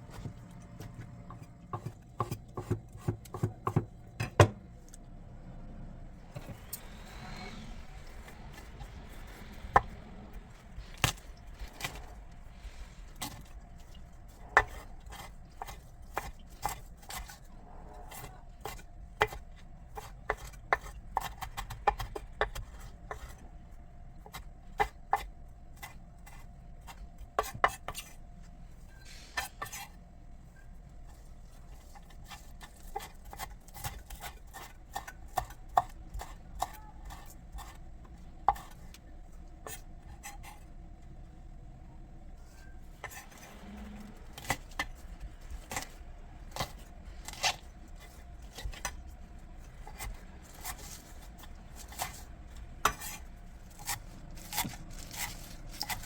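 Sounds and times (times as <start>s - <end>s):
knife chopping on cutting board: 1.3s - 4.6s.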